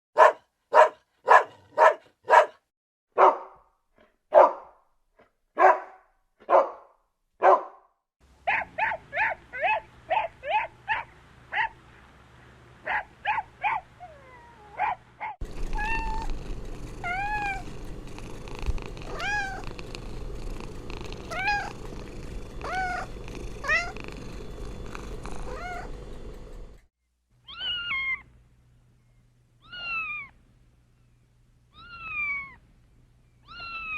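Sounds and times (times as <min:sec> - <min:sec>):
dog barking: 0:00.2 - 0:03.7, 0:04.3 - 0:04.8, 0:05.6 - 0:07.9, 0:08.5 - 0:11.8, 0:12.8 - 0:13.9, 0:14.7 - 0:16.1
cat meowing: 0:14.0 - 0:14.8, 0:15.7 - 0:16.4, 0:17.0 - 0:17.7, 0:19.0 - 0:19.7, 0:21.2 - 0:21.8, 0:22.6 - 0:24.0, 0:25.3 - 0:25.9, 0:27.5 - 0:28.2, 0:29.6 - 0:30.3, 0:31.7 - 0:32.6, 0:33.4 - 0:33.9.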